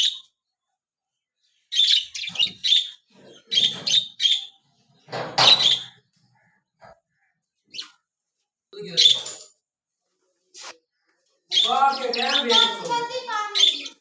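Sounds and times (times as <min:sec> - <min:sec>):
budgies chirping: 0:00.0 - 0:00.4, 0:01.4 - 0:08.0, 0:08.8 - 0:09.4, 0:10.6 - 0:14.0.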